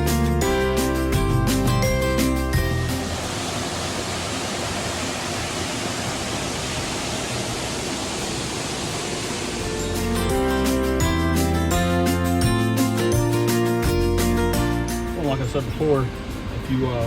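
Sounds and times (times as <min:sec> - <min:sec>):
background music: 0:00.0 - 0:03.6, 0:09.6 - 0:17.0
waterfall rushing: 0:02.7 - 0:10.2.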